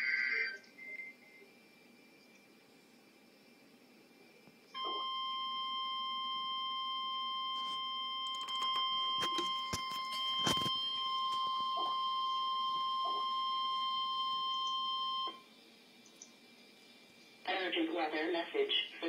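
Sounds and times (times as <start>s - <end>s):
steady high alarm tone: 4.8s - 15.5s.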